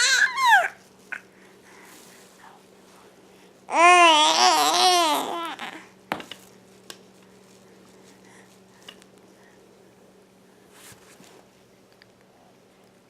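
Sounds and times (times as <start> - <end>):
baby squealing: 0.0 - 0.8, 3.7 - 5.8.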